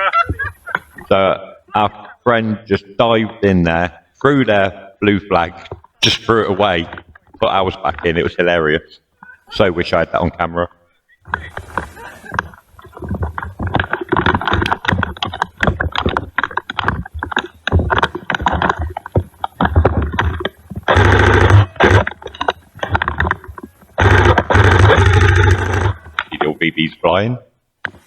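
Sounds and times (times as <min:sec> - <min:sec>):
heavy low rumbling: 0:20.0 - 0:26.2.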